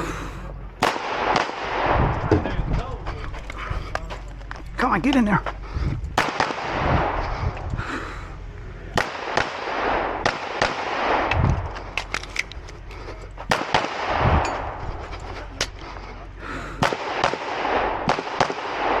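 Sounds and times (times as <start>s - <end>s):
pistol shots: 0.8s - 2.4s, 6.2s - 7.2s, 8.9s - 12.5s, 13.5s - 14.8s, 16.8s - 19.0s.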